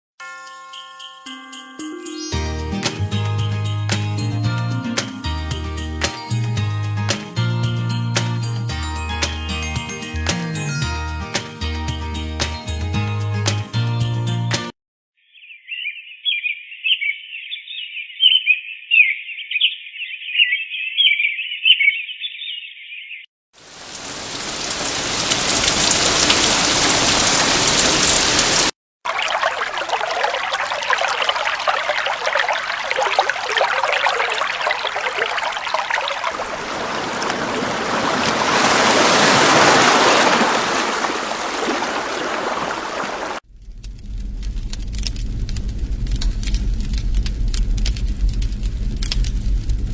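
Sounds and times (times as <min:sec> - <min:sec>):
rushing water-like noise: 0:23.6 - 0:43.4
thin chirping: 0:29.2 - 0:37.3
low hum: 0:43.5 - 0:49.9.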